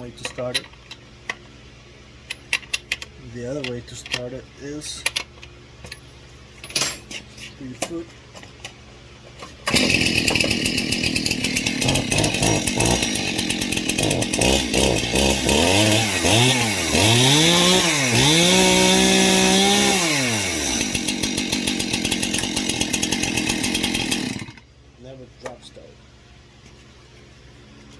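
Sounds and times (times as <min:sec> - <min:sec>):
chainsaw revving and idling: 0:09.7 - 0:24.6.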